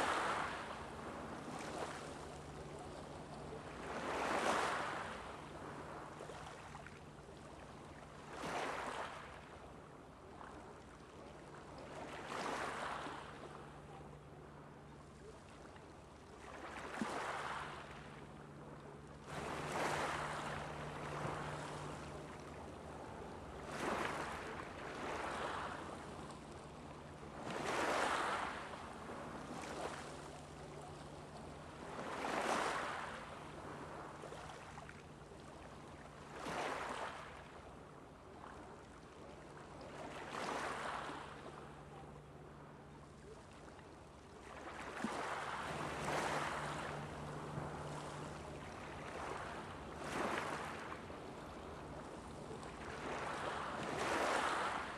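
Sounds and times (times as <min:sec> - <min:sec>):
small waves washing onto beach: 0:00.0 - 0:54.9
steady low hum: 0:17.8 - 0:36.4, 0:41.4 - 0:54.9.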